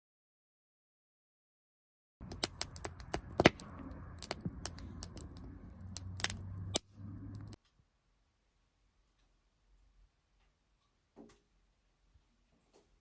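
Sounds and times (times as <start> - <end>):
wood fire crackling: 2.2 - 7.6.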